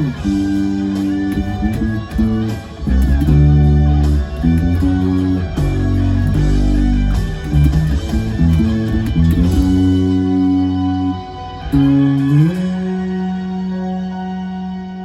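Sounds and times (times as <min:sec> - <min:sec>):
electric bass guitar: 0:00.0 - 0:15.0
rock ballad: 0:00.0 - 0:15.0.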